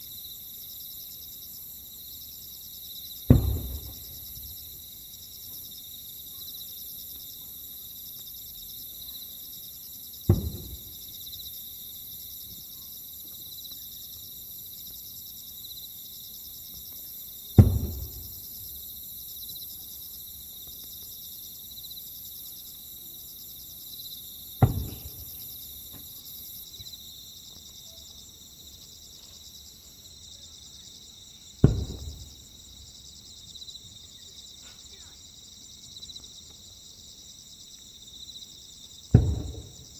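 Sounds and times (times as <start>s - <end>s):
insect chorus: 0.0s - 39.9s
fireworks booming: 3.3s - 4.7s, 10.3s - 11.2s, 17.6s - 18.8s, 24.6s - 26.1s, 31.6s - 32.6s, 39.1s - 39.9s.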